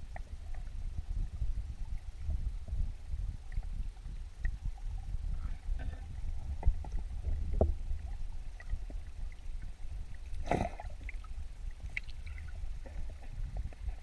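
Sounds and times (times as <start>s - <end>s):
muffled underwater rumble: 0.0s - 14.0s.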